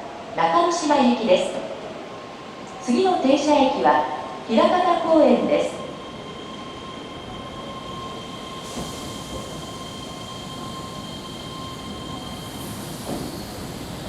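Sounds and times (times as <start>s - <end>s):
train running on rails: 1.4s - 14.0s.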